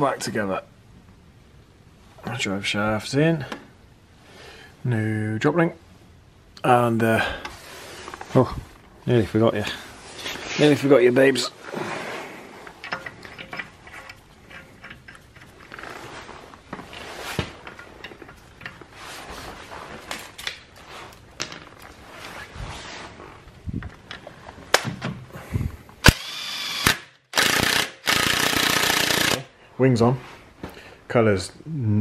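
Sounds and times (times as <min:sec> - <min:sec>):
hand tools clicking and knocking: 0:12.8 - 0:15.8
power tool whining: 0:26.0 - 0:29.4.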